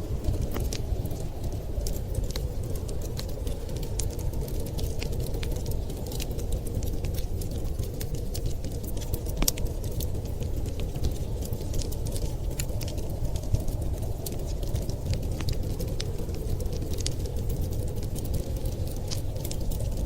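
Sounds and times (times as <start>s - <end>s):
wood fire crackling: 0.0s - 20.0s.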